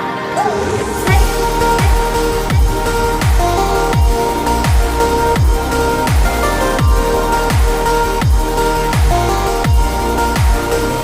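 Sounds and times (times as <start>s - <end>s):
electronic dance music: 0.0s - 11.0s
held synth notes: 0.0s - 11.0s
deep bass kicks: 0.9s - 11.0s.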